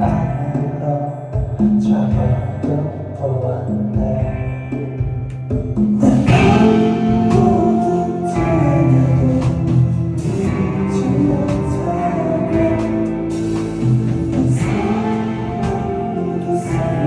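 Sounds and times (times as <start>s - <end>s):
drums playing: 0.0s - 0.8s, 1.4s - 17.0s
person singing: 0.0s - 5.2s, 6.0s - 17.0s
guitars playing: 4.2s - 17.0s.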